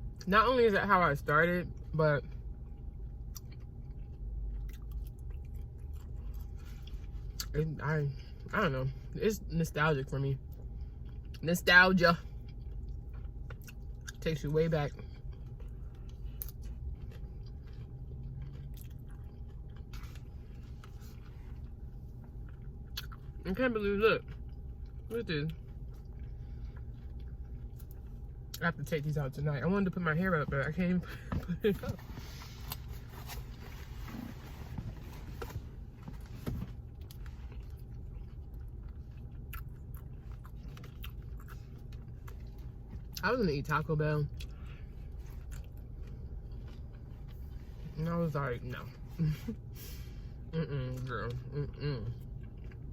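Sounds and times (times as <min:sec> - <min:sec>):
steady low hum: 0:00.0 - 0:52.9
person chewing food: 0:02.2 - 0:07.5, 0:10.5 - 0:11.4, 0:12.3 - 0:14.2, 0:14.9 - 0:23.4, 0:24.2 - 0:28.6, 0:31.1 - 0:43.2, 0:44.3 - 0:47.7, 0:50.9 - 0:52.9.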